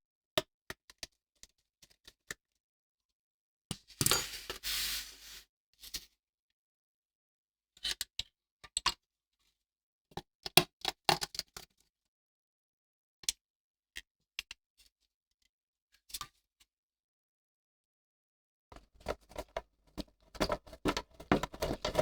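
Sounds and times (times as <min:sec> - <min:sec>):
hands clicking and tapping parts: 0:18.8 - 0:22.0.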